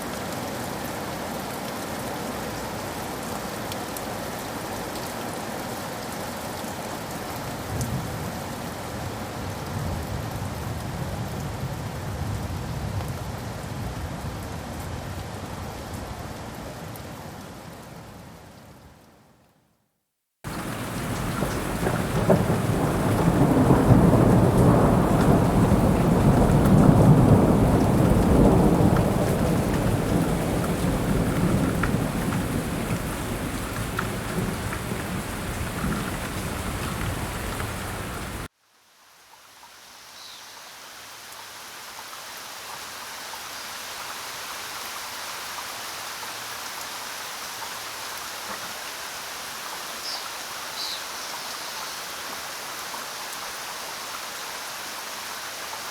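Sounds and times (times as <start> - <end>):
heavy rain: 0.0 - 19.1, 20.5 - 55.9
light steady rain: 0.0 - 55.9
rolling thunder: 20.5 - 38.5.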